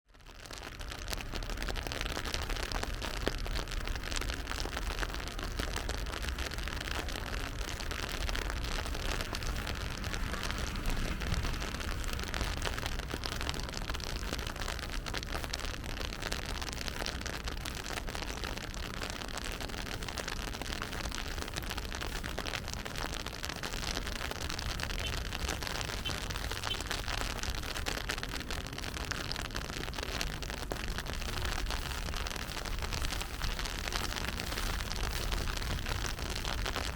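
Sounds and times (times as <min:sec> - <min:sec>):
rain pattering on street: 0:00.0 - 0:36.9
city traffic rumble: 0:00.1 - 0:36.9.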